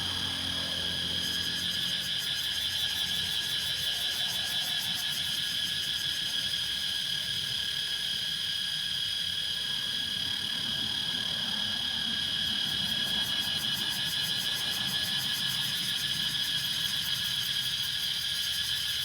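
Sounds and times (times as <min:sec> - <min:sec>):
cicadas calling: 0:00.0 - 0:19.0.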